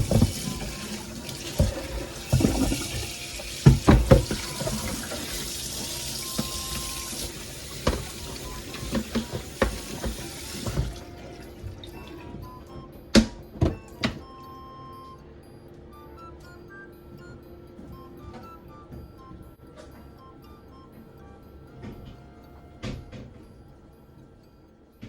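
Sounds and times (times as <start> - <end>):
knocks and clatters of objects: 0.0 - 5.2
tap water running into sink: 0.0 - 12.3.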